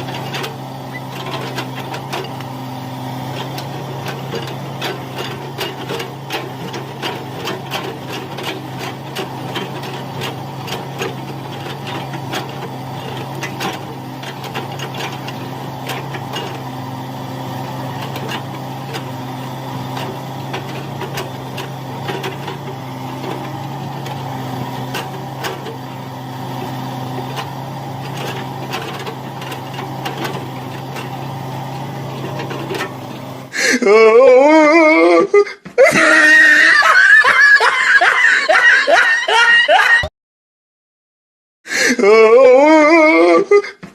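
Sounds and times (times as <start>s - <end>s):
machine clanks and rattles: 0.0s - 33.5s
excavator diesel engine running: 0.0s - 40.1s.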